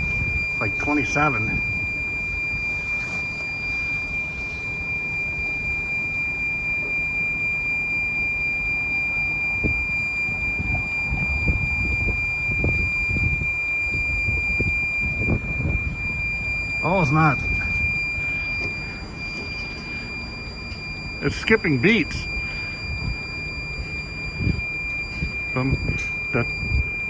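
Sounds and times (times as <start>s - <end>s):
wind buffeting microphone: 0.0s - 0.6s, 9.6s - 16.7s, 22.5s - 26.9s
steady high-pitched tone: 0.0s - 27.0s.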